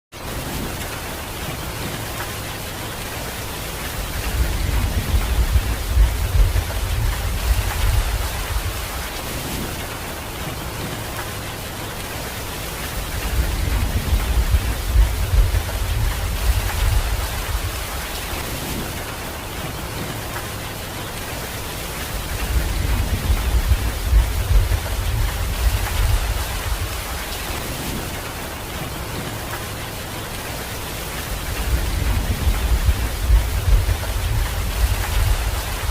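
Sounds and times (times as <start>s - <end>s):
heavy rain falling: 0.1s - 35.9s
thunder rumbling: 4.1s - 11.0s, 13.0s - 20.2s, 22.2s - 29.5s, 31.3s - 35.9s.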